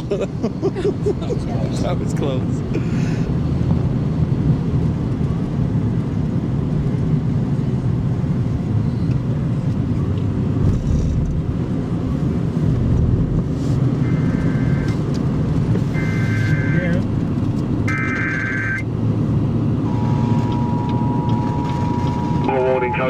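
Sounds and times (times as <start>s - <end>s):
car road and engine rumble: 0.0s - 23.0s
two-tone electronic alert: 14.1s - 14.9s, 16.0s - 17.0s, 17.9s - 18.8s, 19.9s - 23.0s.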